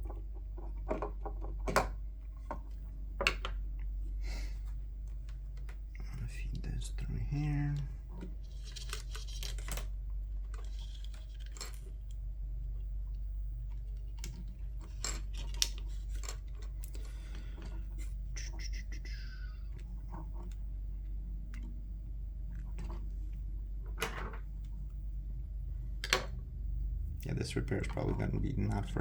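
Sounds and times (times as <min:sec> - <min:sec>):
plastic clicks and scratching: 0:00.0 - 0:03.6, 0:07.4 - 0:12.2, 0:13.6 - 0:21.8
steady low hum: 0:00.0 - 0:29.0.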